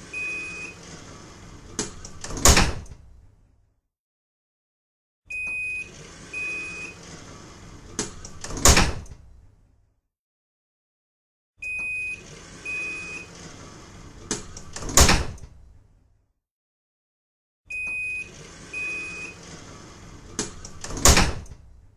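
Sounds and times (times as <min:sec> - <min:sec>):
doors sliding shut with thud: 0:00.0 - 0:03.2, 0:05.8 - 0:09.4, 0:12.2 - 0:15.7, 0:18.2 - 0:21.8.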